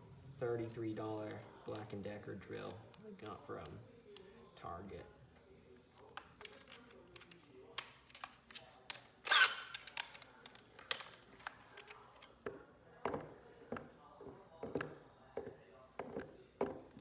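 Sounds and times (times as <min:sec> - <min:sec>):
cordless drill handling clicks: 0:09.3 - 0:11.2.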